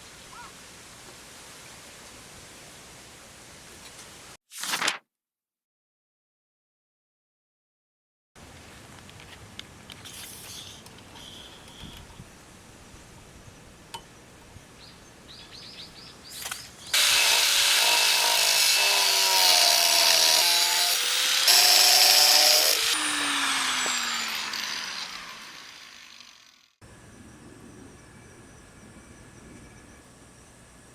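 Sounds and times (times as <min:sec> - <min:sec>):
power tool cutting with whine: 0:16.9 - 0:26.8.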